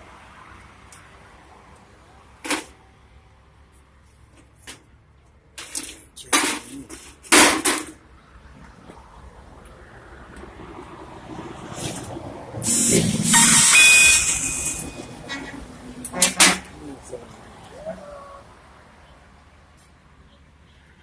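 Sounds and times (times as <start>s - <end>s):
arc welding bursts: 12.6s - 15.0s.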